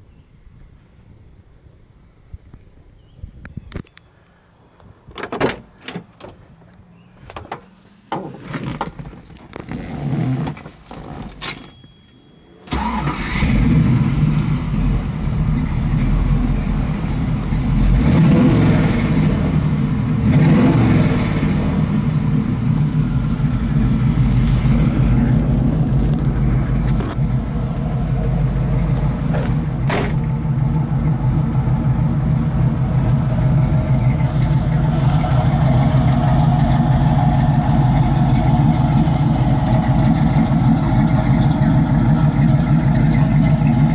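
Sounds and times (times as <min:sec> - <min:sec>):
car engine starting and idling: 0:12.6 - 0:43.9.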